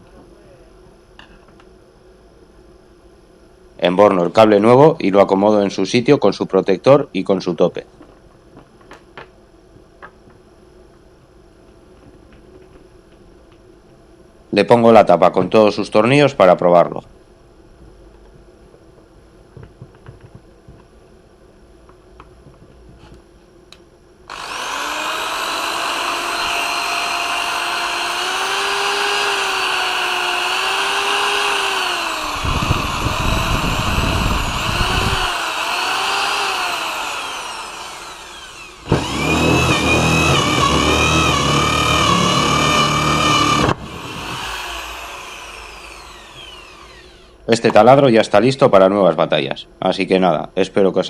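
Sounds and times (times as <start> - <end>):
electric drill motor whining: 24.3 - 47.4.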